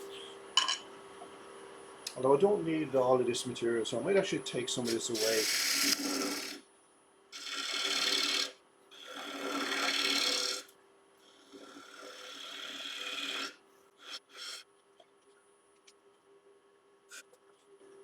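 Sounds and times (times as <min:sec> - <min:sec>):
lathe humming: 0:04.9 - 0:06.6, 0:07.4 - 0:10.7, 0:11.3 - 0:14.6
tool scraping wood on lathe: 0:04.9 - 0:06.6, 0:07.4 - 0:10.7, 0:11.3 - 0:14.6.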